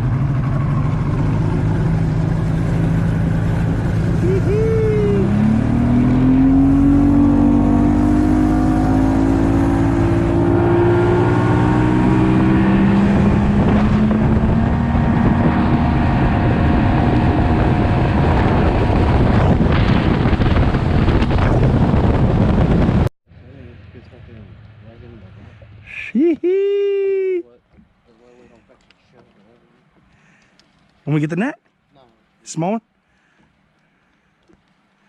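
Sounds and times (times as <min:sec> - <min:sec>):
engine revving: 0:00.0 - 0:22.9.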